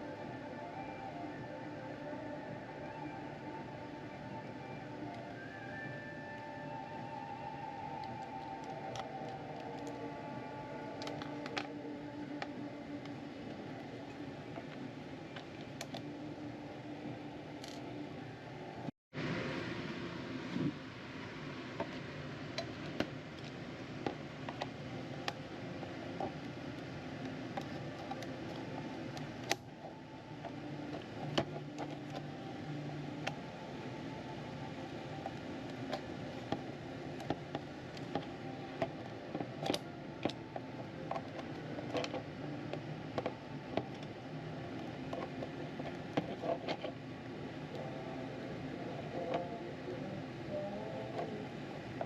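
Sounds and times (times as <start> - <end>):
steady background hum: 0.0 - 52.0
keyboard parts clicking: 10.9 - 13.2, 35.2 - 44.2.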